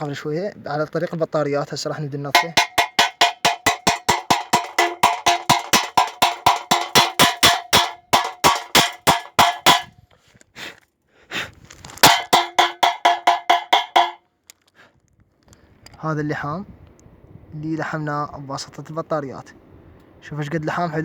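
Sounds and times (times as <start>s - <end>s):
hammer chipping metal: 2.4s - 9.9s, 12.0s - 14.2s.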